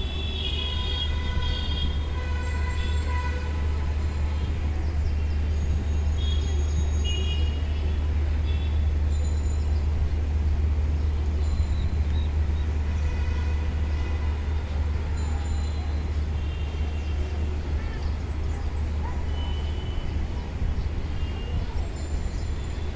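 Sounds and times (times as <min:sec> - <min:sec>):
traffic rumble: 0:00.0 - 0:22.9.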